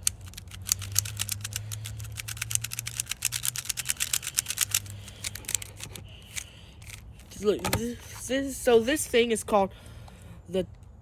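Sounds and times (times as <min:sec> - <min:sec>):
rubik's cube clicking: 0:00.0 - 0:07.0.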